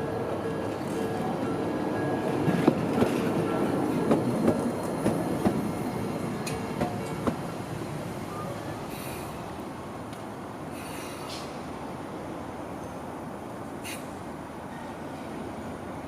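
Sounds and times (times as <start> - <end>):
tram passing on track: 0.0 - 16.0
wheels clacking over rail joints: 2.4 - 7.5.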